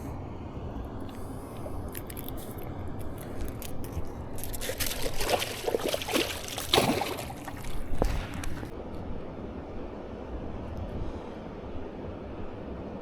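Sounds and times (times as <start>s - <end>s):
water splashing and sloshing: 1.0s - 8.8s
water dripping: 1.1s - 8.7s.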